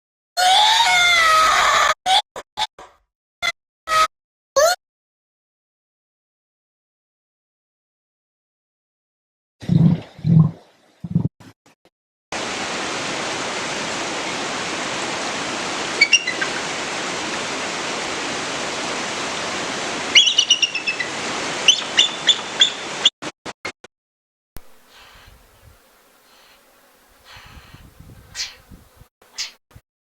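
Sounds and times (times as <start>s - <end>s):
steady rushing hiss: 12.4s - 23.0s, 24.6s - 29.6s
bird chirps: 16.0s - 16.6s, 20.1s - 21.1s, 21.7s - 22.8s, 28.3s - 28.6s, 29.3s - 29.6s.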